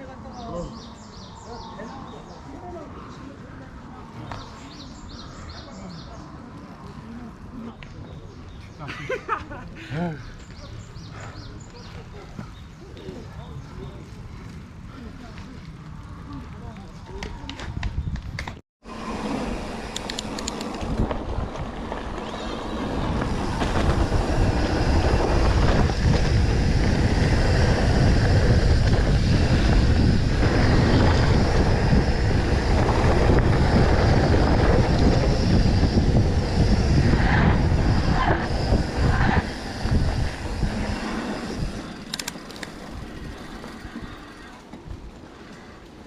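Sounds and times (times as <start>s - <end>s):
bike tyres rumbling over ground: 10.5s - 46.0s
wind on microphone: 11.0s - 45.6s.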